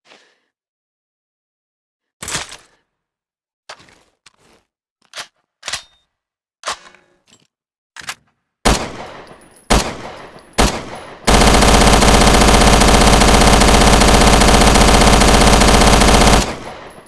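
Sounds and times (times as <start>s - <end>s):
rapid automatic gunfire: 8.7s - 17.0s
single gunshots with echo: 8.7s - 17.0s.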